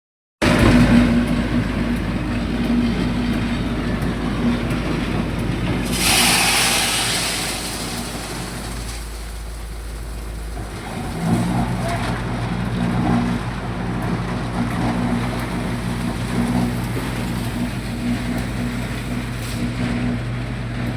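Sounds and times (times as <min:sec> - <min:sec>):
heavy machinery humming: 0:00.4 - 0:20.9
loud hissing rush: 0:05.7 - 0:10.5.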